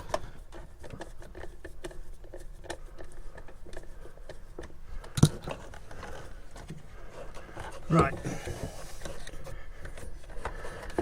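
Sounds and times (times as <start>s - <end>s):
clicks and rustles of handled wiring: 0.0s - 11.0s.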